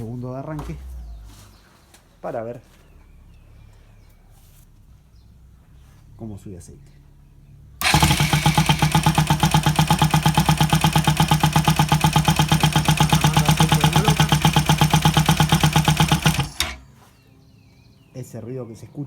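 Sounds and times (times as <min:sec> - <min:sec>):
engine cranking on starter: 0:07.8 - 0:16.9.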